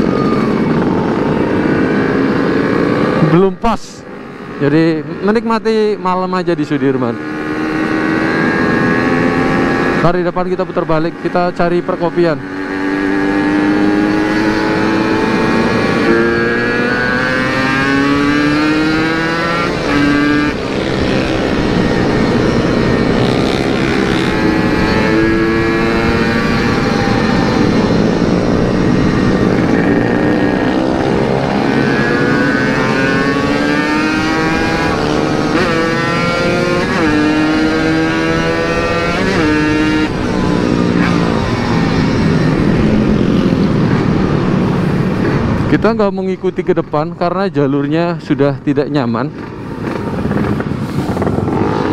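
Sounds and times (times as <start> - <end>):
motorcycle engine accelerating: 0.0 - 3.6, 6.4 - 46.1, 49.3 - 51.9.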